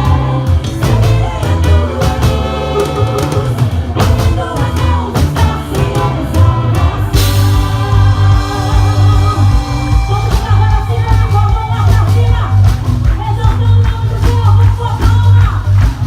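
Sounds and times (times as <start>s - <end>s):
singing: 0.0s - 12.6s
drum kit beat: 0.0s - 16.0s
gospel band playing: 0.0s - 16.0s
heavy bass line: 0.0s - 16.0s.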